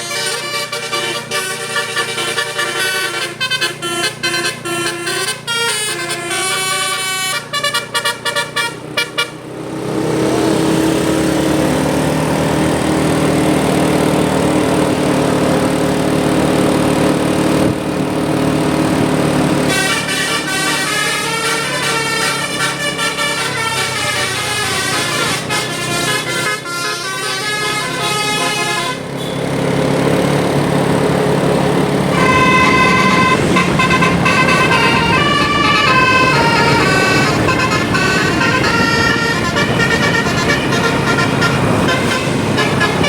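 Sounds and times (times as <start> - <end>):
held horn notes: 0.0 - 9.6, 19.5 - 30.2, 31.8 - 43.0
bus musical air horn melody: 0.0 - 9.8, 19.5 - 30.1, 31.9 - 43.0
rushing noise: 31.5 - 43.0.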